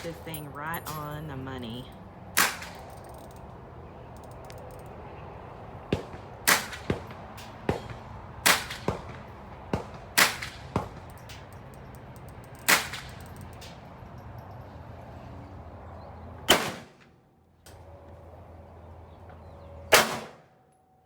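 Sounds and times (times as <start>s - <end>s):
rifle single shots: 2.4s - 3.2s, 5.9s - 11.1s, 16.5s - 17.0s, 19.9s - 20.4s
faint distant gunshots: 5.8s - 11.2s, 16.5s - 17.1s.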